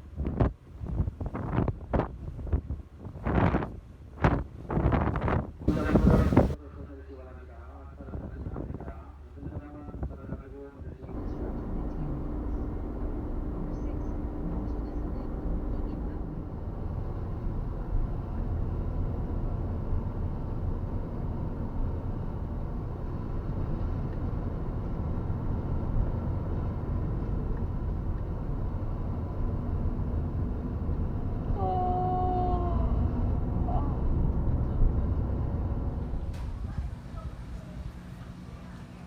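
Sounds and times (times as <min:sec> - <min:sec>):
vehicle rumbling in motion: 0:00.0 - 0:06.7, 0:08.0 - 0:39.0
faint engine tones: 0:05.7 - 0:08.1, 0:10.2 - 0:39.0.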